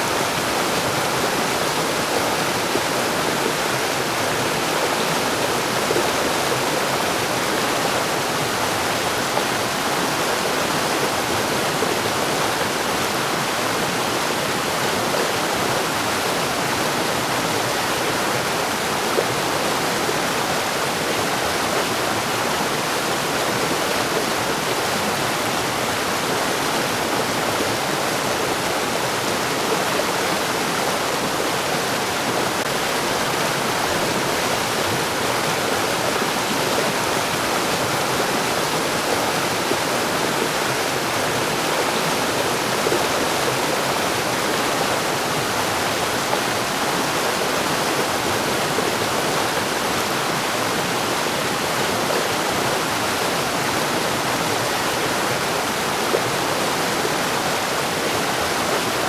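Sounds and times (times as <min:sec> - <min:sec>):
stream rushing over rocks: 0:00.0 - 0:59.0.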